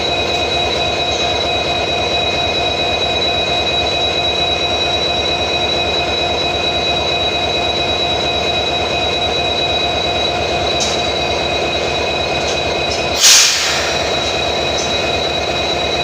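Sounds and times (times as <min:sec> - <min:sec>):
passenger train rumbling: 0:00.0 - 0:16.0
high whine: 0:08.5 - 0:16.0
loud hiss: 0:13.2 - 0:14.5.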